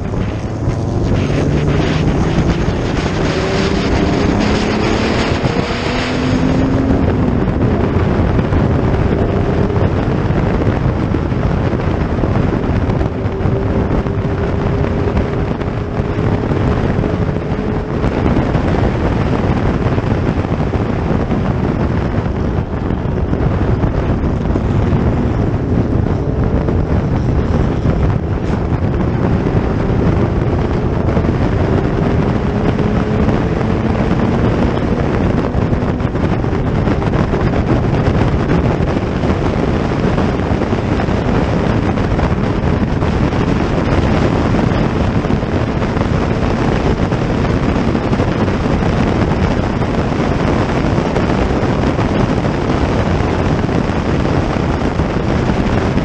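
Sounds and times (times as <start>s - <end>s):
racing car engines passing: 0.0s - 8.2s
wind noise on microphone: 0.0s - 56.0s.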